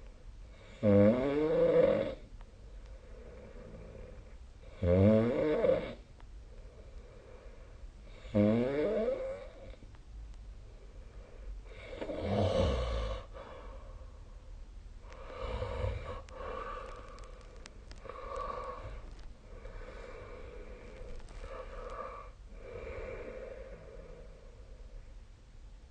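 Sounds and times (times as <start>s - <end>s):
person snoring: 0.6s - 2.2s, 3.2s - 6.0s, 8.1s - 9.8s, 11.7s - 14.0s, 15.2s - 17.2s, 18.0s - 24.7s.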